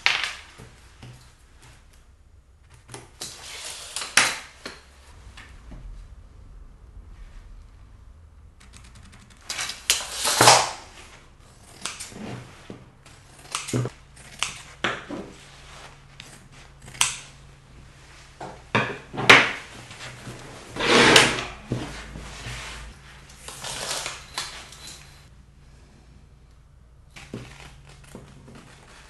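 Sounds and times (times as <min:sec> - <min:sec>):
scissors cutting fabric: 0:11.5 - 0:12.2.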